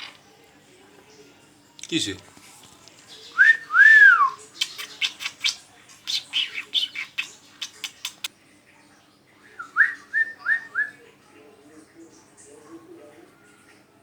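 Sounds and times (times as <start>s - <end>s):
parrot squawking and clicking: 4.6s - 8.3s.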